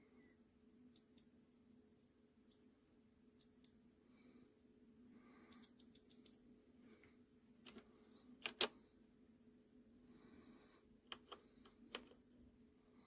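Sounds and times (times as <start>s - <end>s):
low steady hum: 0.0s - 13.0s
small buttons clicking: 11.1s - 12.2s.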